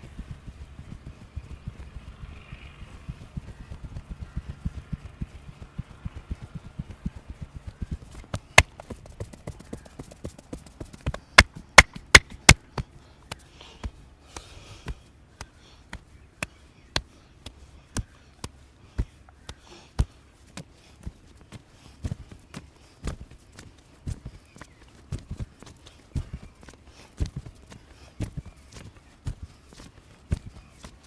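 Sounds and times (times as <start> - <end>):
hands chopping and slapping head: 11.1 - 12.9.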